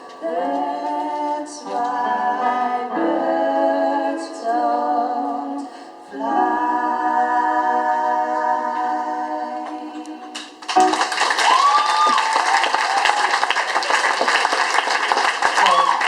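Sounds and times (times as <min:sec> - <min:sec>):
person singing long held notes: 0:00.0 - 0:10.6.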